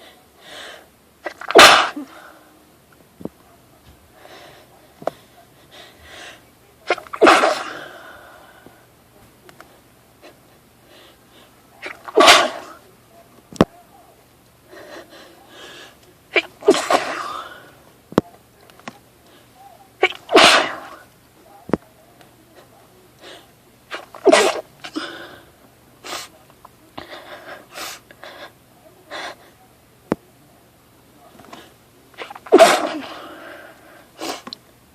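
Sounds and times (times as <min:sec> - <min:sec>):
breaths: 0:00.0 - 0:01.0, 0:02.0 - 0:02.6, 0:04.1 - 0:06.5, 0:07.7 - 0:08.9, 0:10.2 - 0:11.6, 0:14.7 - 0:16.1, 0:17.2 - 0:17.8, 0:19.2 - 0:19.7, 0:22.6 - 0:23.6, 0:24.8 - 0:26.3, 0:27.0 - 0:29.6, 0:32.9 - 0:34.5
woman sneezing: 0:01.2 - 0:02.2, 0:06.9 - 0:08.0, 0:11.8 - 0:12.8, 0:16.3 - 0:17.5, 0:20.0 - 0:21.0, 0:23.9 - 0:25.2, 0:32.2 - 0:33.3.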